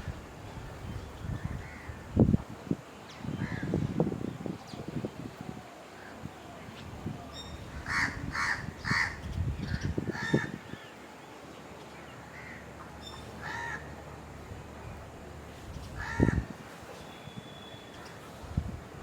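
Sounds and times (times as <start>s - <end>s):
birds calling: 6.0s - 14.0s, 15.7s - 18.4s.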